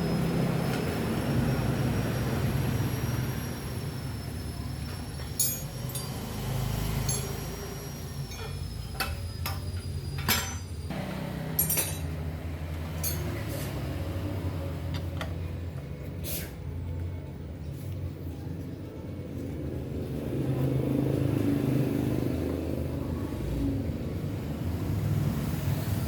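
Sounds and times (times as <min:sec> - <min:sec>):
hand tools clinking on metal: 0:05.2 - 0:10.9, 0:11.5 - 0:13.8.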